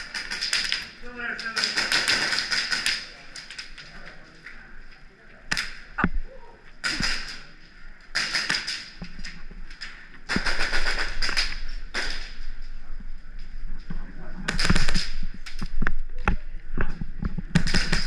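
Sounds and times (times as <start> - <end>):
airsoft guns firing: 0.0 - 3.1, 6.8 - 7.5, 8.1 - 9.0, 10.3 - 12.4, 14.5 - 15.2, 17.6 - 18.0.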